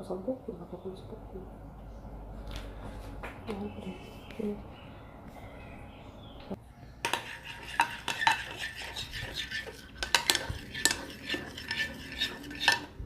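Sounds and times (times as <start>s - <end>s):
utensil stirring slime in bowl: 7.1s - 13.0s.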